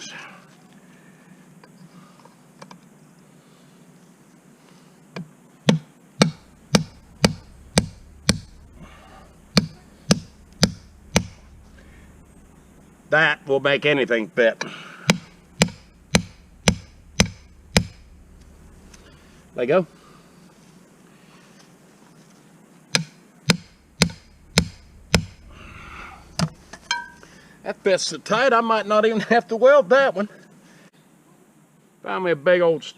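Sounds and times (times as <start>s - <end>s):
hammer striking steel rebar: 5.7s - 12.1s, 15.1s - 18.1s, 23.0s - 27.2s.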